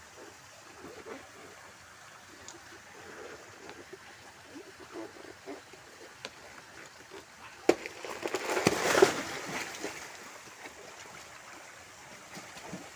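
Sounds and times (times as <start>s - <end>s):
loud water splash: 8.3s - 10.0s.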